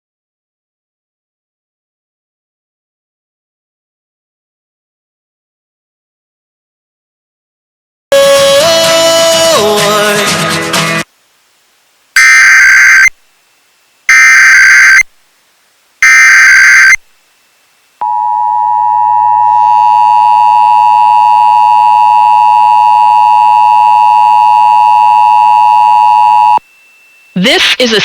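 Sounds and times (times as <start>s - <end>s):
shrill data bursts: 12.2s - 13.2s, 14.1s - 15.1s, 16.0s - 17.1s, 18.0s - 28.0s
two-tone attention signal: 14.1s - 15.0s, 16.0s - 17.0s, 18.0s - 26.6s.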